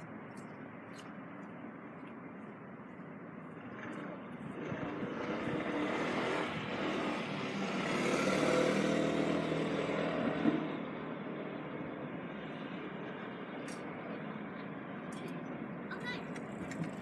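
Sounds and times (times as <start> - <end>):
vehicle passing by: 3.8 - 13.6.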